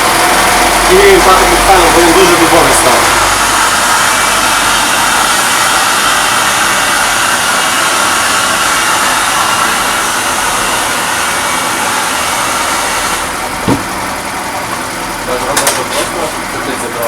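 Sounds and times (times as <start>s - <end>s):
scooter engine whirring: 0.0s - 17.0s
short engine knock: 13.5s - 16.2s.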